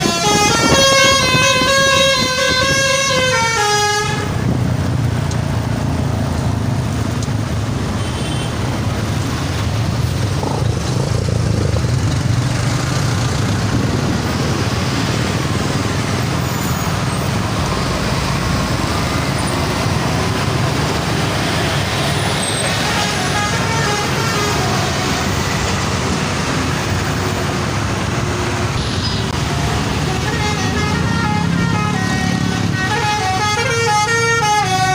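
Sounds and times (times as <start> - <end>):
multi-tone bus air horn melody: 0.0 - 4.6, 22.7 - 25.4, 29.9 - 34.9
engine and traffic rumble: 0.0 - 34.9.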